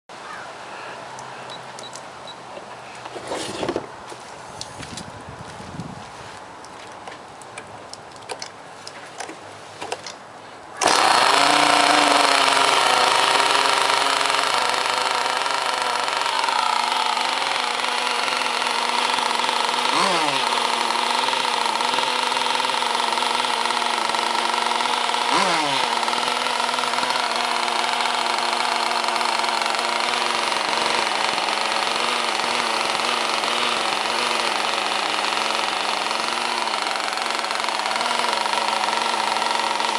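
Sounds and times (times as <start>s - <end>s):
boat engine running: 10.8s - 39.9s.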